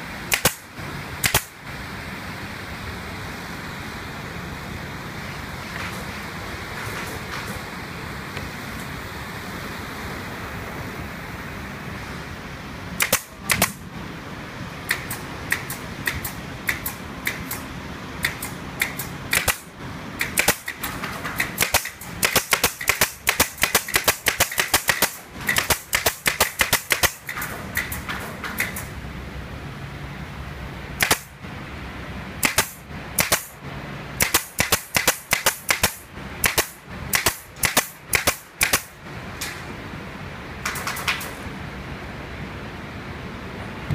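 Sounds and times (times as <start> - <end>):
workshop machinery hum: 0.0 - 43.9
air-powered fastener gun firing: 0.3 - 1.6, 13.0 - 13.8, 14.9 - 28.9, 31.0 - 31.4, 32.4 - 33.6, 34.2 - 39.6, 40.6 - 41.5.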